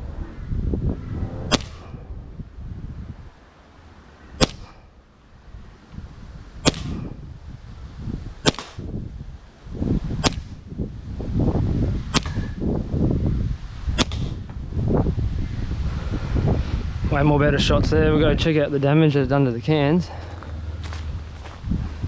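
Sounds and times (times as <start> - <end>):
gel blaster pistol shots: 4.4 - 4.8, 6.7 - 7.2, 8.5 - 9.0.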